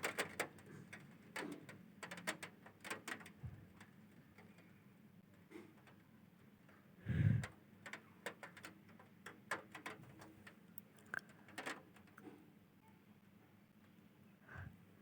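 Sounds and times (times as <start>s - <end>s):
light clicks and knocks: 0.0s - 6.8s, 7.4s - 12.5s.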